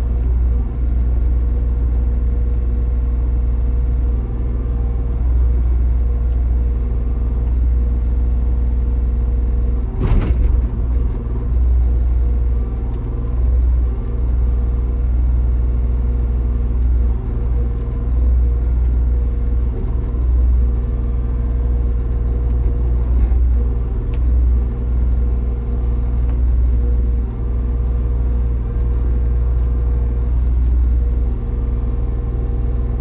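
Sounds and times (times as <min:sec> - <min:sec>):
diesel engine low rumble: 0:00.0 - 0:33.0
sharp clunk: 0:09.9 - 0:11.3.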